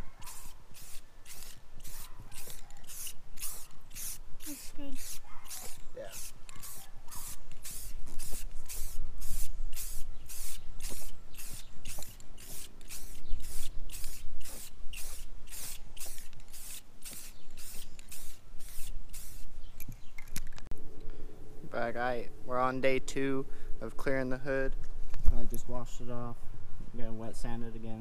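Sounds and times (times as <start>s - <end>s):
rhythmic hissing strokes: 0.0s - 19.7s.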